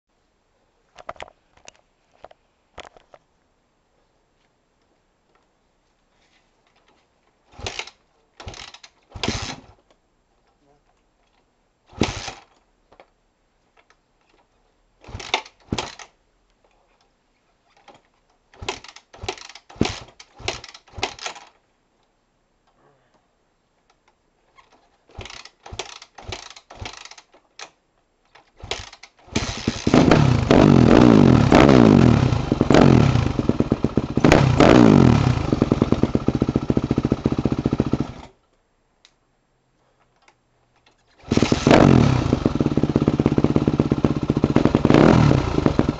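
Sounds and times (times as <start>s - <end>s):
motorcycle engine starting and revving: 7.5s - 9.7s, 11.9s - 12.5s, 15.0s - 16.0s, 18.6s - 21.4s, 25.2s - 27.3s, 28.6s - 38.3s, 41.2s - 45.9s.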